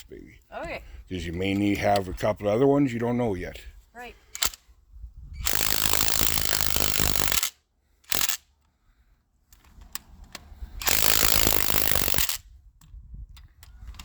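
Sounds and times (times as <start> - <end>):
impact wrench rattling bursts: 4.4 - 4.6, 5.4 - 8.5, 10.7 - 12.4.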